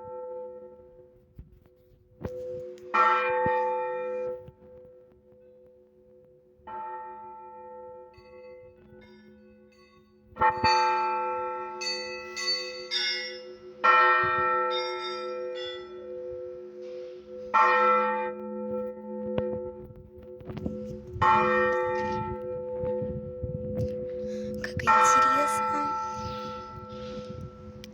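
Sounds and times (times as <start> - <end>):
large church bell striking: 2.5 - 5.1, 6.6 - 24.2, 24.8 - 27.9
higher-pitched bells ringing: 24.8 - 27.7.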